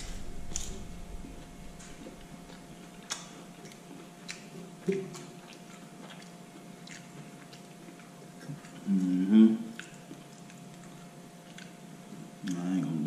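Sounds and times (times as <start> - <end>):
faint steady hum: 0.0 - 13.0
chewing food: 0.4 - 13.0
wet mouth clicks and smacks: 1.8 - 9.0, 9.7 - 11.8.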